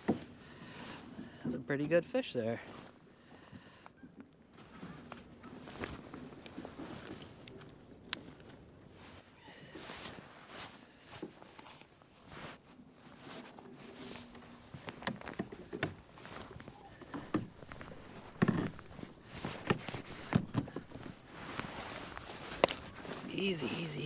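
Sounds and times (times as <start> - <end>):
fishing gear clicking and rustling: 13.3 - 24.0.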